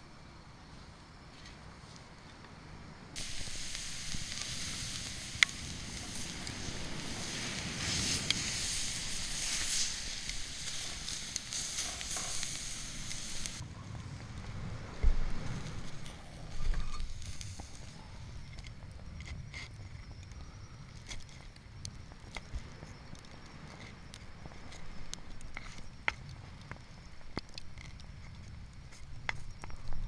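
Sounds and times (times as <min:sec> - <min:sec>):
fish sizzling on a grill: 0:03.2 - 0:13.6, 0:15.5 - 0:18.4.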